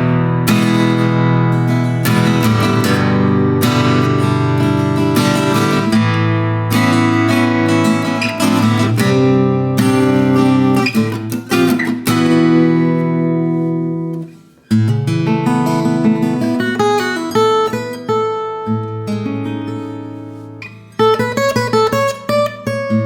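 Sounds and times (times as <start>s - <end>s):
acoustic guitar blues playing: 0.0s - 23.0s.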